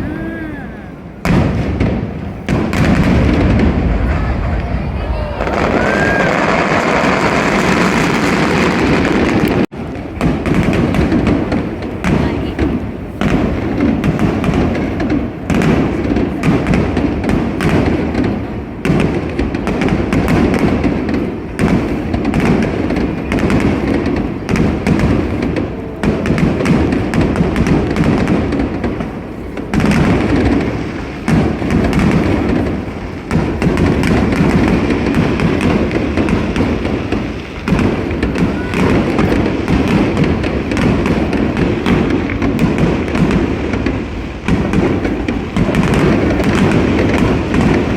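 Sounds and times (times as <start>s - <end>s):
fireworks booming and crackling: 0.0s - 47.9s
low rumble: 2.8s - 8.0s.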